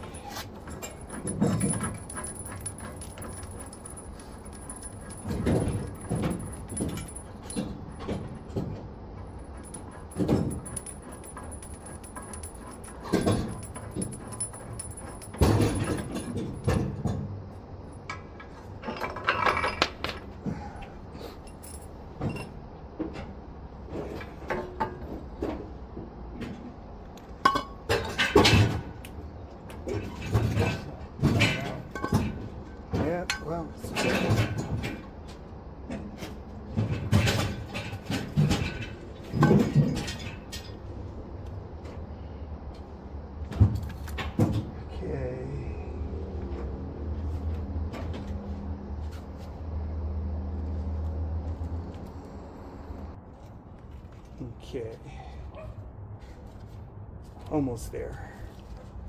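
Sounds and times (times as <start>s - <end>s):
hand tools and metal parts clinking: 0.0s - 22.6s, 27.1s - 42.0s.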